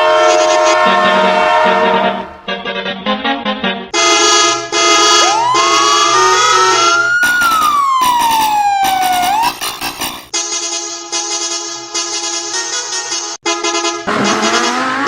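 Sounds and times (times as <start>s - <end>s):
emergency vehicle siren wailing: 4.0s - 10.3s, 14.1s - 15.0s
loud repeated musical chords: 4.9s - 12.3s.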